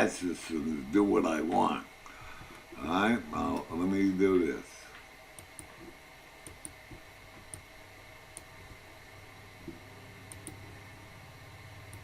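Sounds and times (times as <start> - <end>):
faint steady hum: 0.0 - 12.0
computer mouse clicking: 6.4 - 7.7, 9.6 - 10.6.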